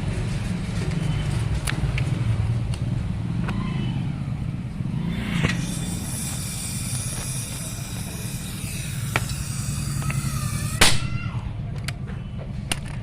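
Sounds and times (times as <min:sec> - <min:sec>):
low mechanical hum: 0:00.0 - 0:13.0
sharp clicks and knocks: 0:11.7 - 0:13.0.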